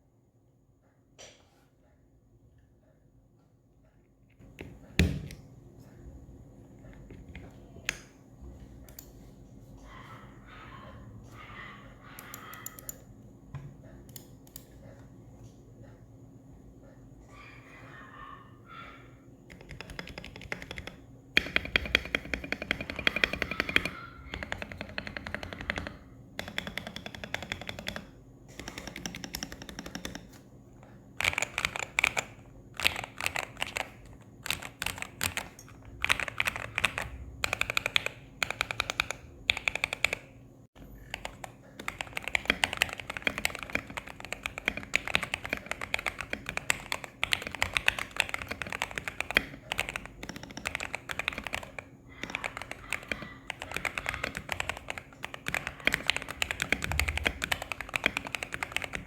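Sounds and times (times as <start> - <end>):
mechanical keyboard typing: 12.1 - 13.0, 19.5 - 30.4, 31.2 - 40.3, 40.9 - 59.0.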